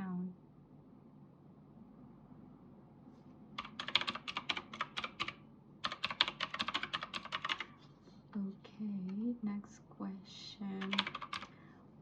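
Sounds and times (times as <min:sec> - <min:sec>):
typing on computer keyboard: 0:03.6 - 0:07.8, 0:10.8 - 0:11.5.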